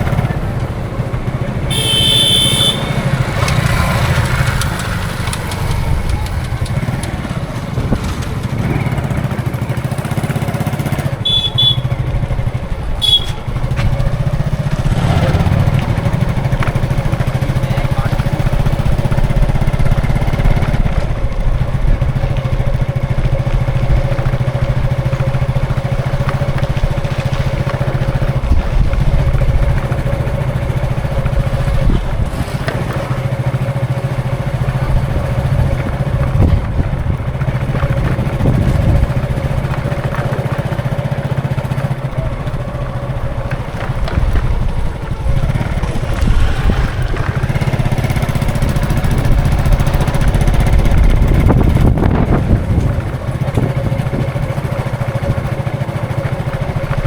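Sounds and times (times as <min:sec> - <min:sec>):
motorcycle engine: 0:00.0 - 0:57.0
road traffic engines: 0:00.0 - 0:57.0.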